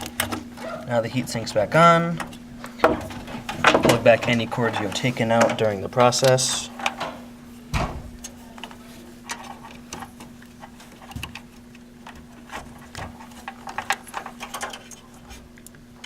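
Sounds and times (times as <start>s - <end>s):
steady low hum: 0.0s - 16.0s
computer parts clicking and knocking: 2.2s - 7.2s
thump: 7.7s - 8.1s.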